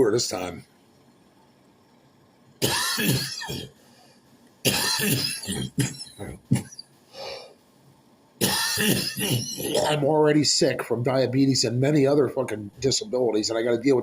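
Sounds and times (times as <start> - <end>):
person coughing: 2.6 - 3.7, 4.7 - 6.8, 8.4 - 10.0.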